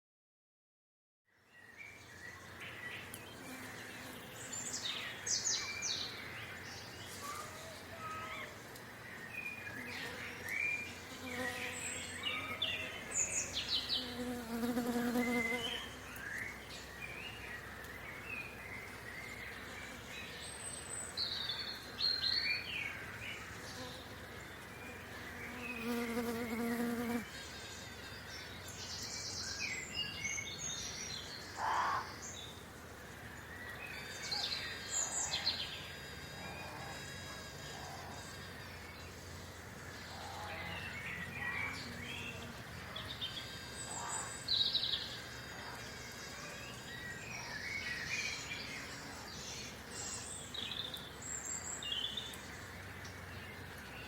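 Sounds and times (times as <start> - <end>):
small birds chirping: 1.3 - 54.0
flying insect buzzing: 9.8 - 12.6, 13.6 - 16.0, 23.6 - 24.2, 24.9 - 27.5.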